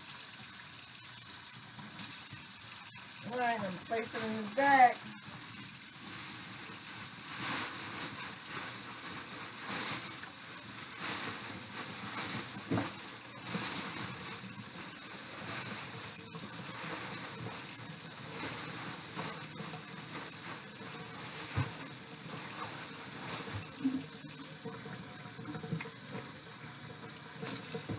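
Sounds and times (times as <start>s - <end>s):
tap running into sink: 23.5s - 27.9s.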